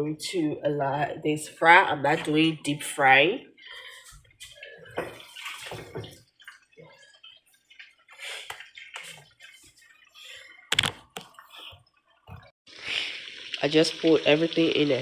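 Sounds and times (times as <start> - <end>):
oil frying pops and crackles: 12.2 - 15.0.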